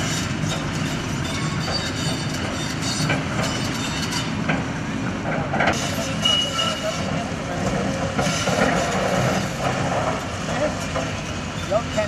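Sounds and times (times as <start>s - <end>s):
heavy demolition rumble: 4.4s - 12.0s.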